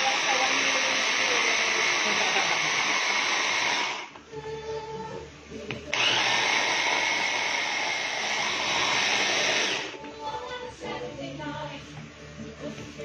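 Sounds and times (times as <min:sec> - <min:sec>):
electric blender whirring: 0:00.0 - 0:04.2, 0:05.9 - 0:10.0.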